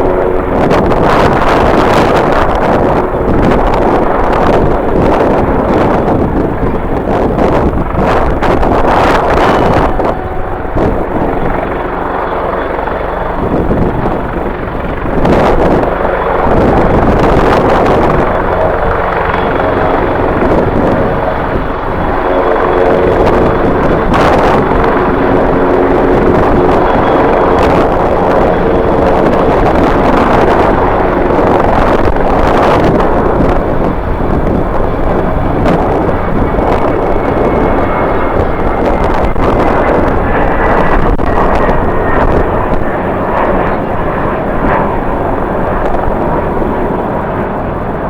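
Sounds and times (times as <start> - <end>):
airliner engines running: 0.0 - 48.0
wind buffeting microphone: 0.0 - 48.0
sustained tones: 7.7 - 13.4.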